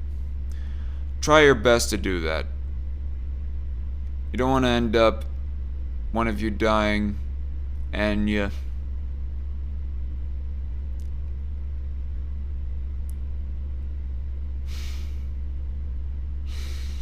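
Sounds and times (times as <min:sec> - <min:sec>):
steady low hum: 0:00.0 - 0:17.0
faint clicks: 0:10.9 - 0:11.4, 0:13.0 - 0:13.3
soft breath-like hiss: 0:14.6 - 0:15.4, 0:16.4 - 0:17.0.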